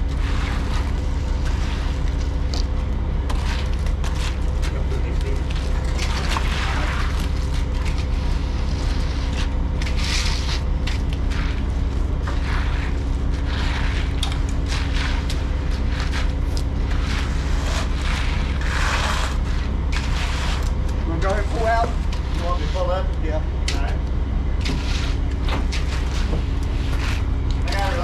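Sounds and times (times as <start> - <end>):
hissing scrapes: 11.3 - 23.0.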